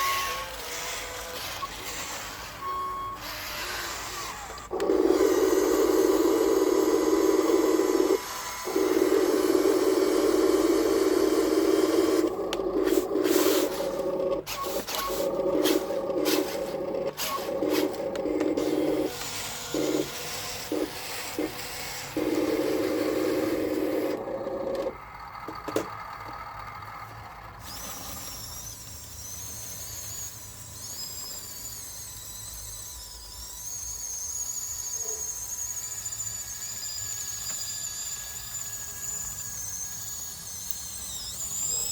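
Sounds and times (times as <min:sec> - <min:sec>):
electric motors whining: 0:00.0 - 0:41.9
clicks and scraping: 0:05.9 - 0:25.0.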